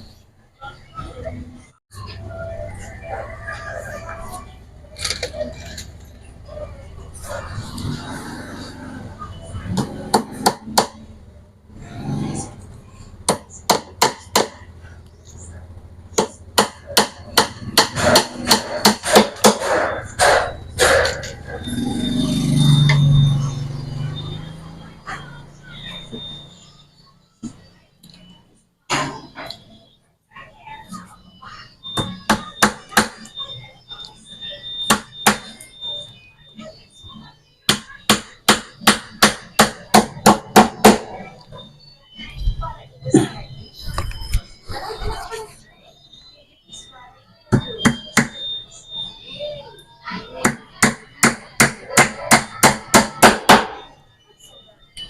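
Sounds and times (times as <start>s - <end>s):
hammer striking plywood: 50.5s - 53.8s.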